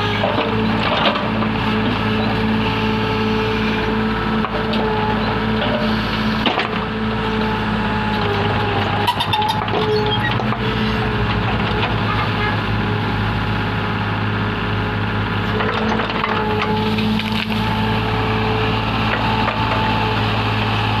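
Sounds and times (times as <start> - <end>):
backhoe engine running: 0.0 - 21.0
wood cracking and crunching: 15.8 - 18.1.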